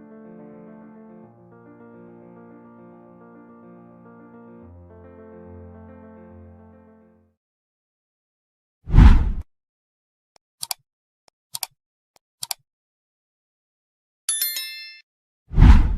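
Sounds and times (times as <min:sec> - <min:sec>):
sharp clicks: 0:10.6 - 0:10.8, 0:11.5 - 0:11.8, 0:12.4 - 0:12.6
bright ringing chime: 0:14.3 - 0:15.0.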